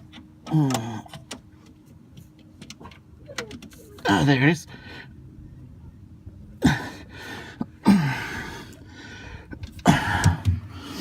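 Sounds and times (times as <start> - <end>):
man grunting and gasping: 6.6 - 11.0.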